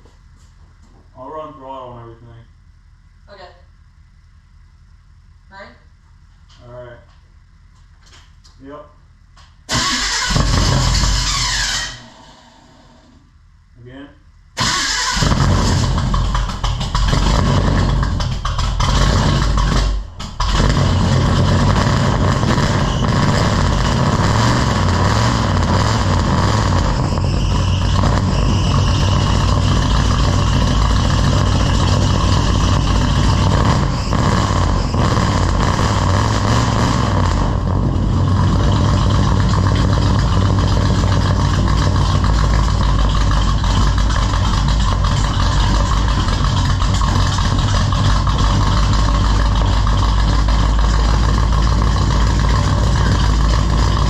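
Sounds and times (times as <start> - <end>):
truck engine idling fast: 14.6 - 54.0.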